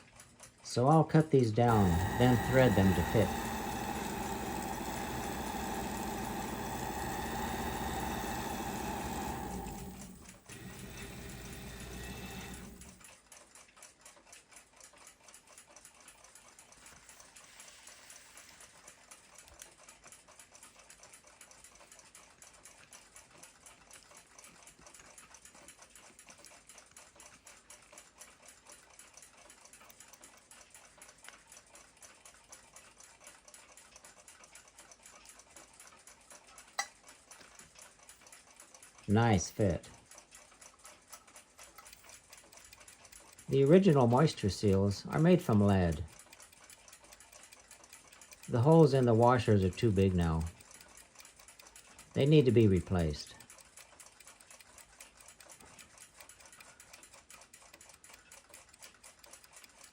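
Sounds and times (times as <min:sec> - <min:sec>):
clock ticking: 0:00.0 - 0:59.9
power tool motor whining: 0:01.6 - 0:13.0.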